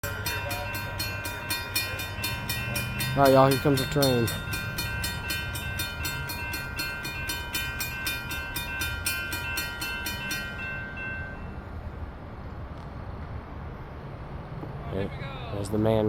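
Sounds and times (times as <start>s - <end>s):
crossing bell ringing rapidly: 0.0s - 12.1s
diesel locomotive rumble: 0.0s - 16.0s.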